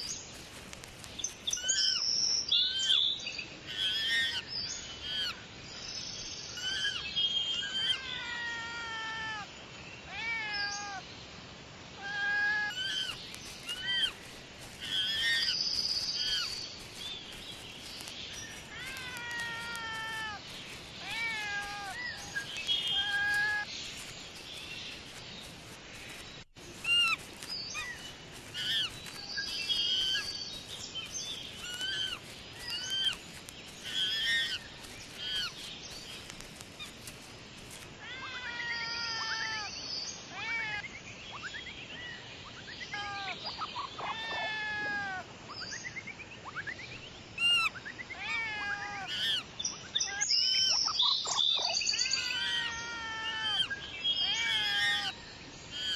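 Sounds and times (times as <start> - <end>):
cat meowing: 10.1 - 11.0, 18.5 - 24.1, 27.8 - 30.3, 44.0 - 45.2, 52.2 - 55.1.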